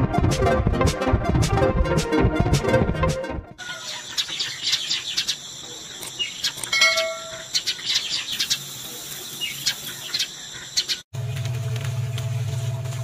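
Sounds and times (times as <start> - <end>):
low motor hum: 0.0 - 3.6, 11.2 - 13.0
small birds chirping: 3.6 - 11.4.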